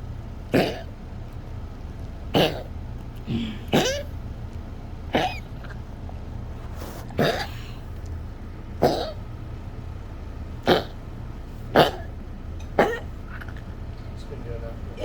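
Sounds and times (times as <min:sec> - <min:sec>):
small dog coughing: 0:00.4 - 0:01.0, 0:02.3 - 0:04.2, 0:05.1 - 0:06.0, 0:07.0 - 0:07.8, 0:08.8 - 0:09.3, 0:10.6 - 0:11.0, 0:11.6 - 0:13.8.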